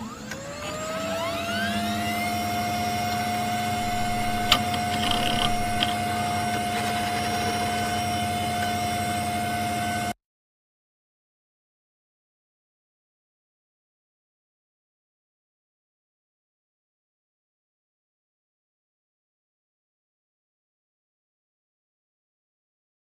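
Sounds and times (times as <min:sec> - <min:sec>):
machine whine spinning up: 0:00.0 - 0:10.2
low hum: 0:03.5 - 0:06.4.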